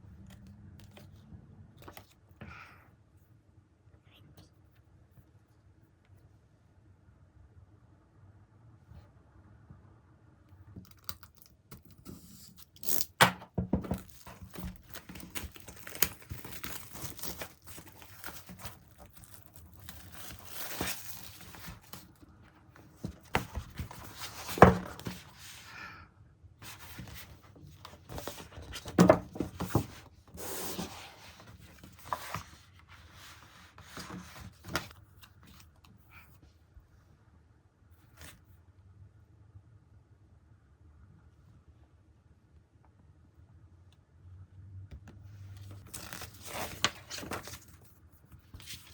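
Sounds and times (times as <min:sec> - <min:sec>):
packaging tearing and crinkling: 0:10.9 - 0:22.1.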